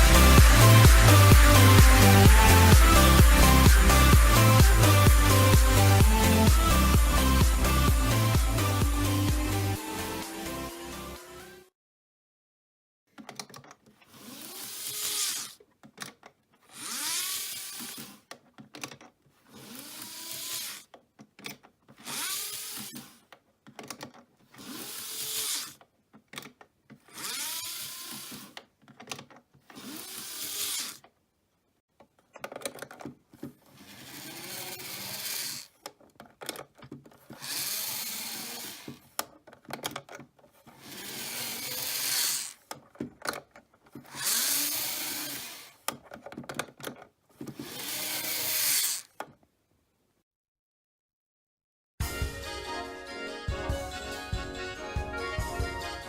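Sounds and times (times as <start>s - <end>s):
model train motor whine: 14.1s - 15.6s, 16.7s - 18.2s, 19.5s - 20.8s, 22.0s - 23.2s, 24.6s - 25.8s, 27.1s - 28.6s, 29.7s - 31.0s, 33.8s - 35.7s, 37.3s - 39.0s, 40.8s - 42.6s, 44.0s - 45.8s, 47.5s - 49.1s.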